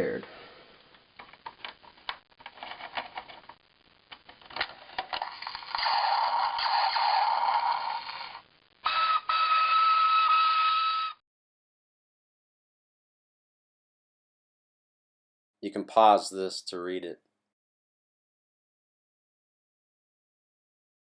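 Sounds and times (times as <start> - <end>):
buzzing toy sound effect: 5.2 - 11.2.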